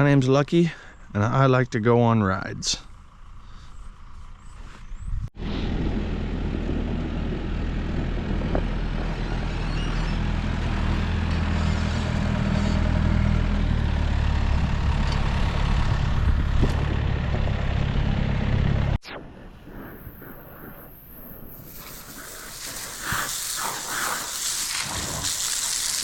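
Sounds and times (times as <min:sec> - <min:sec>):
vehicle engine running: 0:00.7 - 0:19.0.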